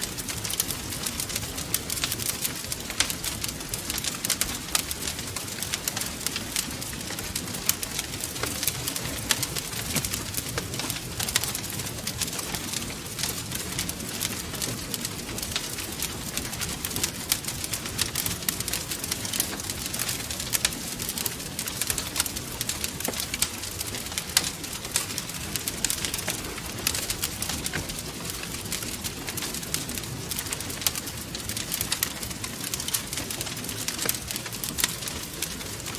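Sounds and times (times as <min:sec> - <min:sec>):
wood fire crackling: 0:00.0 - 0:35.9.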